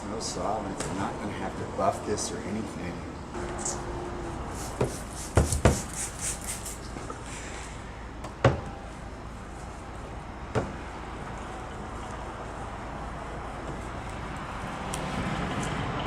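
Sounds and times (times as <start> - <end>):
short hissing sounds: 4.5 - 7.9.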